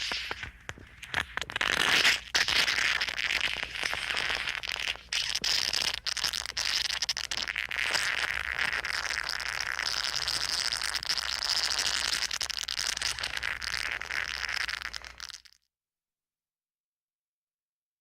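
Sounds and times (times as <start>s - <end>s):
wet squirting spray: 0.0s - 15.4s.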